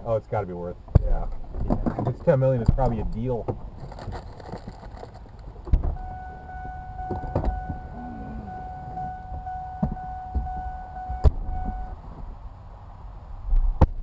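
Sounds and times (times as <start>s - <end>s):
moving truck rumble: 0.0s - 13.4s
high whine: 5.8s - 12.0s.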